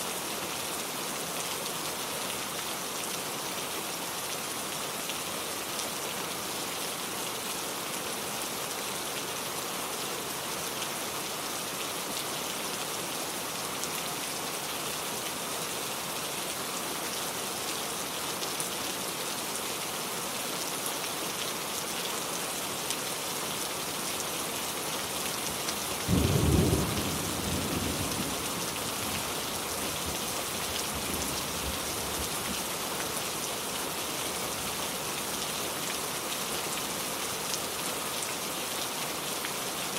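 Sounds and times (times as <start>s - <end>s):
heavy rain: 0.0s - 39.9s
thunder rumbling: 26.1s - 28.7s.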